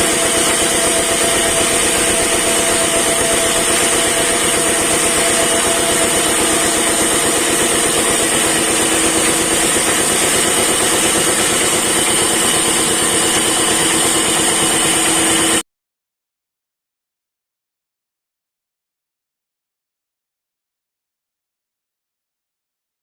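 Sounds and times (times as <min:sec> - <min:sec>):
wood-cutting machine motor: 0:00.0 - 0:15.6.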